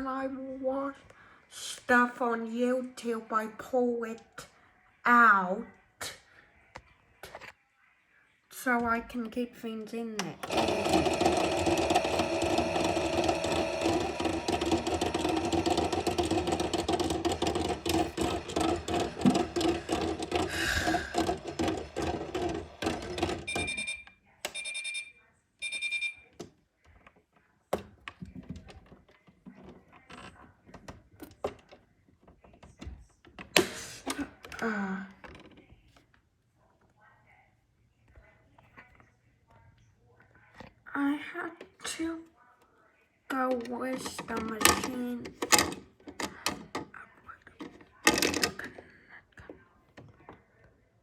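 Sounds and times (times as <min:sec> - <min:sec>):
small electric motor whirring: 0:10.5 - 0:23.3.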